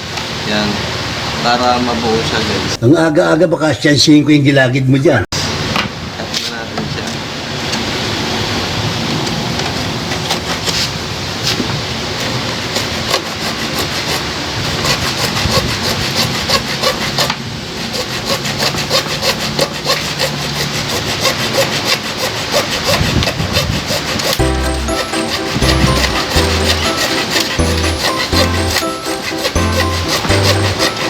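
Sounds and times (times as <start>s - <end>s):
hand saw cutting plastic: 10.1s - 11.0s, 12.2s - 31.0s.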